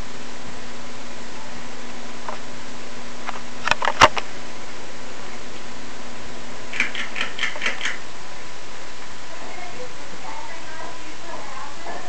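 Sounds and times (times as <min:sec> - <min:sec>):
ceiling fan running: 0:00.0 - 0:12.0
sharp clicks: 0:06.7 - 0:08.0.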